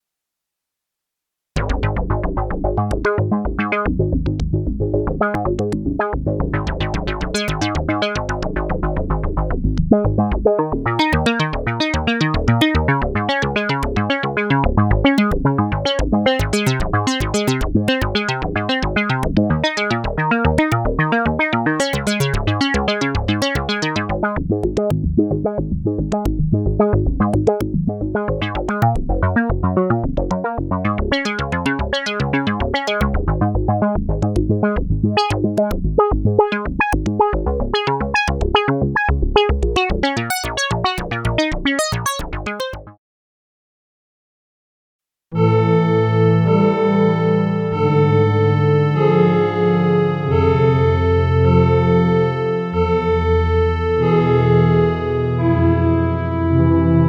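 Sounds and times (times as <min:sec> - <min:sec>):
synthesizer short repeating notes: 0:10.9 - 0:24.1, 0:36.3 - 0:43.0.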